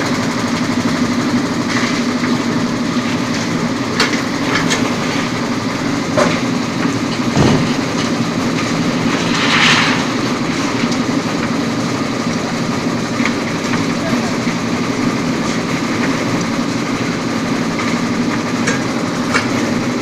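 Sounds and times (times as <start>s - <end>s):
concrete mixer engine drone: 0.0s - 20.0s
metal clanks and knocks: 6.1s - 11.6s, 18.6s - 19.6s.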